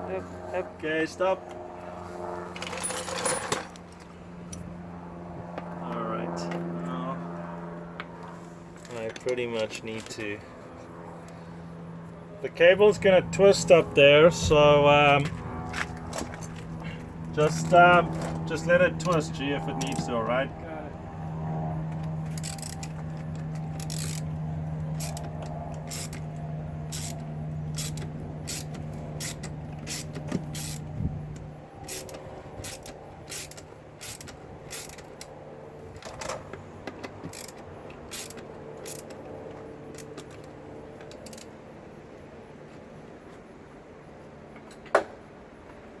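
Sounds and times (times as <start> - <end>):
clicks and creaks of hand work: 21.9 - 24.3, 25.0 - 41.6.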